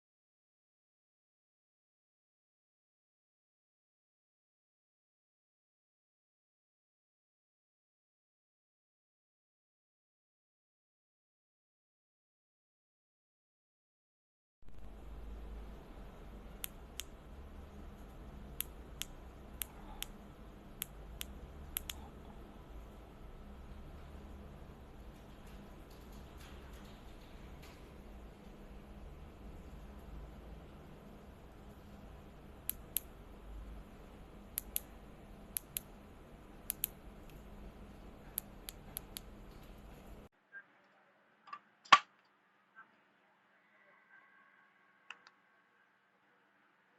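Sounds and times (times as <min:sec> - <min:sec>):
low steady hum: 0:14.6 - 0:41.6
small sharp clicks: 0:16.5 - 0:22.2, 0:34.5 - 0:36.0, 0:36.6 - 0:37.6, 0:38.2 - 0:40.2.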